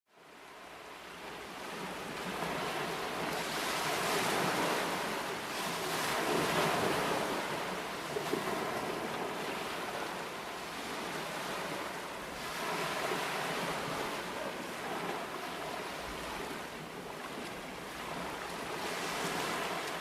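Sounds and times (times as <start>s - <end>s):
waves washing: 0.3s - 20.0s.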